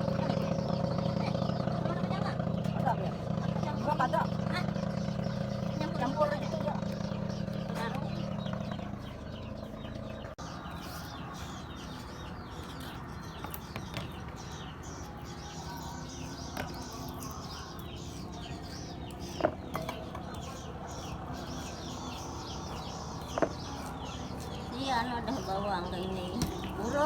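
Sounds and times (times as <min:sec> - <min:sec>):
birds chirping: 0:00.0 - 0:27.0.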